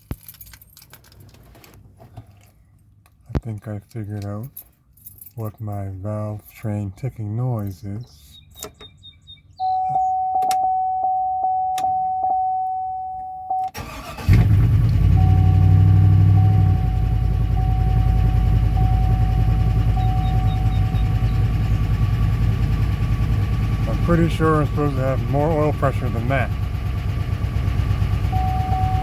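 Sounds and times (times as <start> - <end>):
car engine cranking and idling: 0.0 - 29.0
electronic warning tone: 9.6 - 13.8, 15.0 - 21.7, 28.3 - 29.0.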